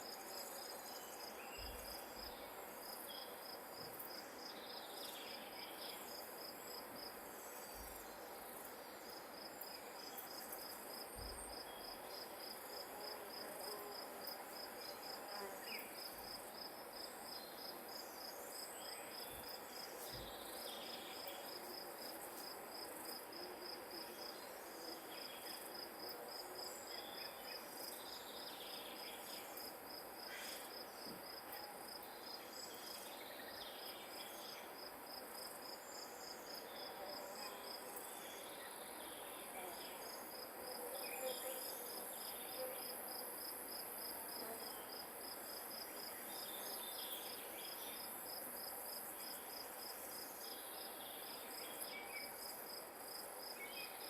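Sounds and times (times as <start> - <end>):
high insect hiss: 0.0 - 54.0.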